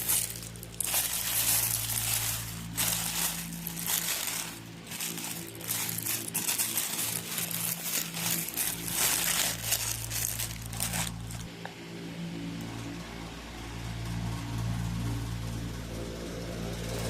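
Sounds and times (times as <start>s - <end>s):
packaging crinkling and rustling: 0.0s - 11.5s.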